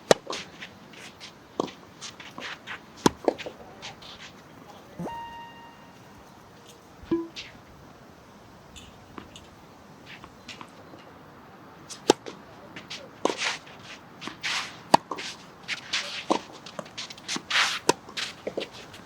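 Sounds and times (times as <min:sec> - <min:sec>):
footsteps and shoes scuffing on court: 0:00.1 - 0:05.5, 0:11.9 - 0:19.0
racket hitting tennis ball: 0:07.1 - 0:07.5.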